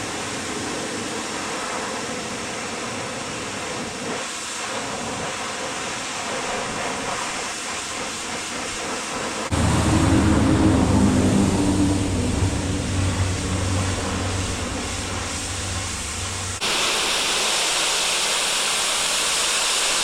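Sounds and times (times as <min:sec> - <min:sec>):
faint machine hum: 0:09.5 - 0:16.6
low engine drone: 0:09.5 - 0:16.9.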